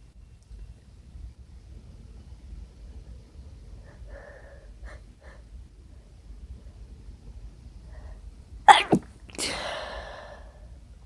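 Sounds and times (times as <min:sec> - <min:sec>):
faint low room rumble: 0:00.0 - 0:11.0
faint intake of breath: 0:07.9 - 0:10.8.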